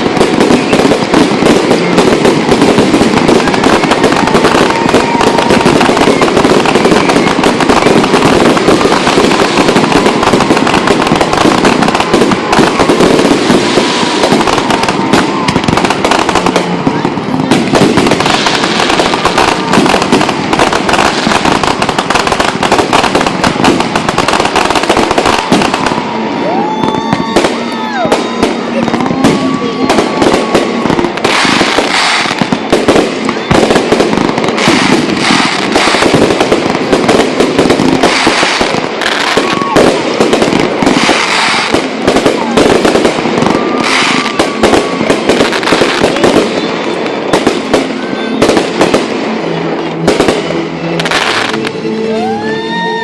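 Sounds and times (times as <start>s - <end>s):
fireworks bangs and crackles: 0.0s - 53.0s.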